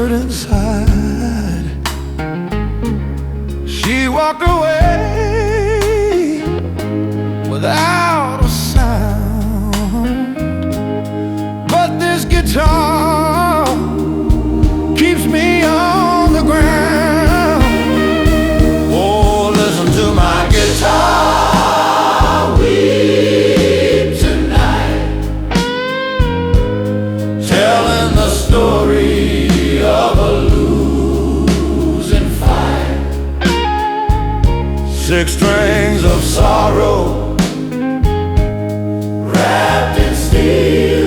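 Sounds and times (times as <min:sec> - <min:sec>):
wordless backing vocals: 0:00.0 - 0:02.2, 0:03.5 - 0:41.0
bass: 0:00.0 - 0:41.0
steady drum beat: 0:12.3 - 0:41.0
electric guitar solo: 0:17.6 - 0:19.0, 0:25.4 - 0:27.5, 0:33.4 - 0:35.0.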